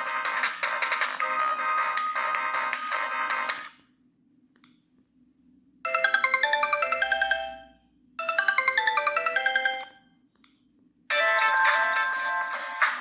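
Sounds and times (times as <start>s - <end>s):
phone ringtone melody: 5.9s - 10.2s.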